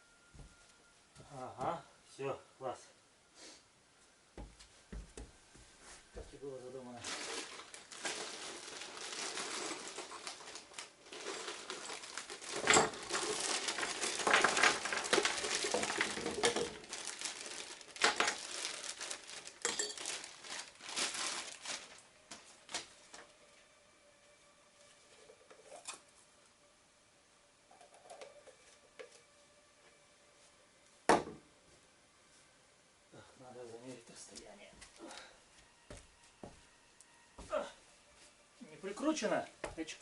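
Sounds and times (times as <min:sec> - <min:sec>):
rustling and handling noise: 0:04.4 - 0:23.3.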